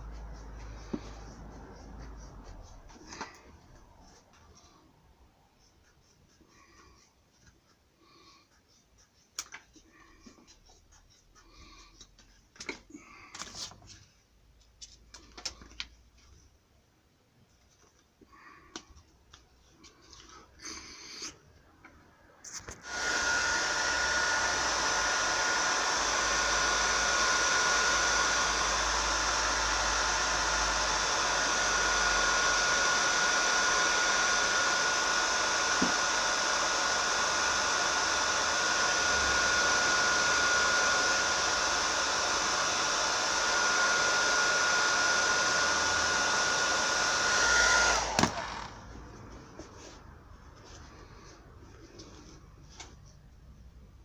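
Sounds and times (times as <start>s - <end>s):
electric tool hissing and whining: 22.8s - 48.9s.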